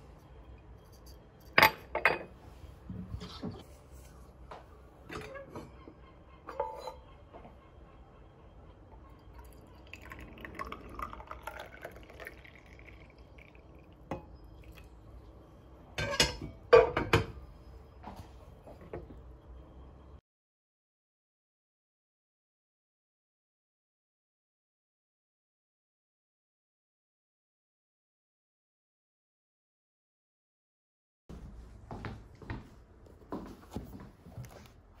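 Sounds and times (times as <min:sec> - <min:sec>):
dishes and glassware clinking: 0:00.8 - 0:02.4, 0:05.1 - 0:05.9, 0:06.5 - 0:07.1, 0:16.0 - 0:17.5
liquid pouring: 0:09.4 - 0:14.9.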